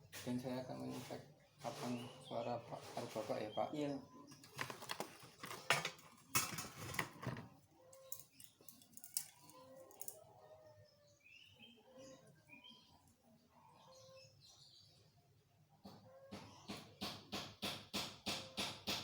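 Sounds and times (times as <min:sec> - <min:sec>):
birds chirping: 0:00.0 - 0:17.2.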